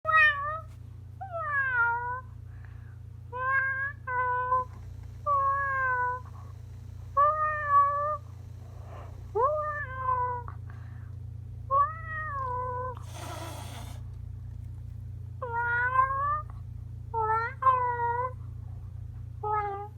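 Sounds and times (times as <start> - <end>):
steady low hum: 0.1 - 19.9
cat hissing: 12.9 - 14.2.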